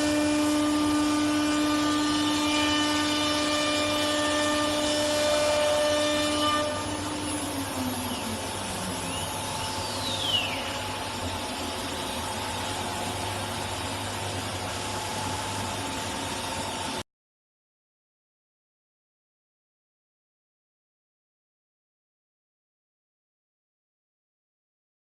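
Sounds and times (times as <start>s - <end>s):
machine humming: 0.0s - 17.0s
router spindle whining and spinning down: 0.0s - 17.0s.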